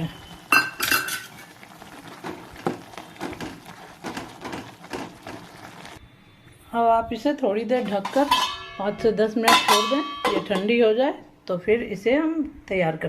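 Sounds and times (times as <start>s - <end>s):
metal utensil clanging on pan: 0.5s - 1.4s, 7.8s - 10.8s
utensil knocking and scraping pan: 7.8s - 8.7s.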